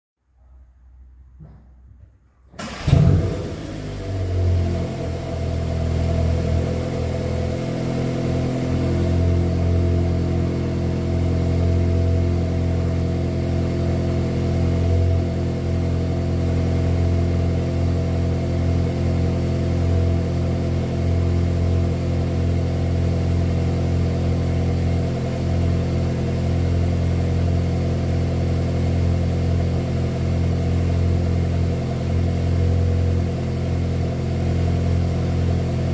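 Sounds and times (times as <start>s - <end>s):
car engine starting and idling: 2.5s - 35.9s.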